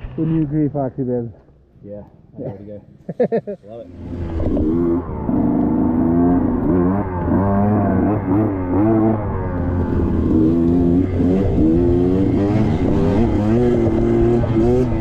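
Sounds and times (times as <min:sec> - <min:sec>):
dirt bike engine revving: 0:03.9 - 0:15.0.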